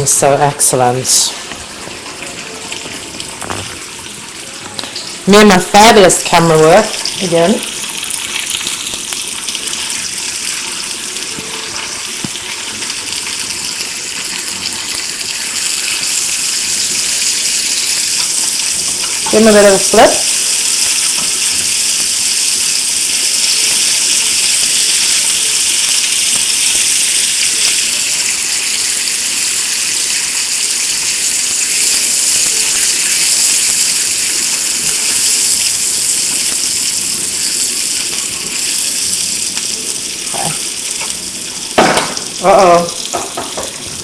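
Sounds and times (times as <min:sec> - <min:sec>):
hot dogs sizzling in a frying pan: 0:00.0 - 0:44.0.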